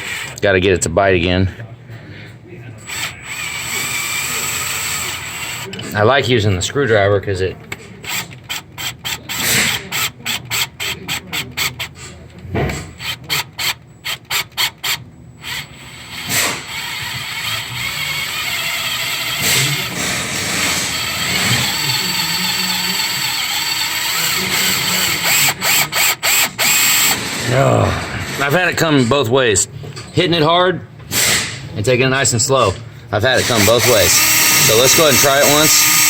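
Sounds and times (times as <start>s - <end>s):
drill running: 2.9s - 6.0s, 8.1s - 12.1s, 13.0s - 27.5s, 33.2s - 36.0s
hand ratchet clicking: 8.1s - 12.0s, 13.0s - 27.2s, 33.4s - 36.0s.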